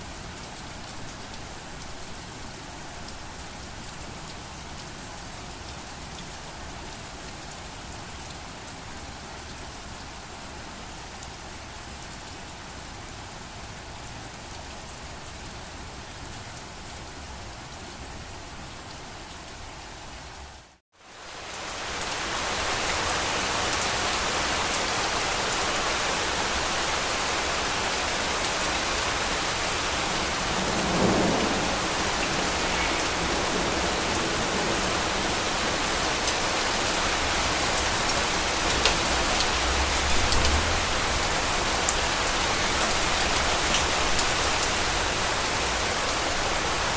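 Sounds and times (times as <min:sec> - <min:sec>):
rain falling: 0:00.0 - 0:46.9
low thunder rumbles: 0:29.1 - 0:36.2, 0:38.5 - 0:44.8.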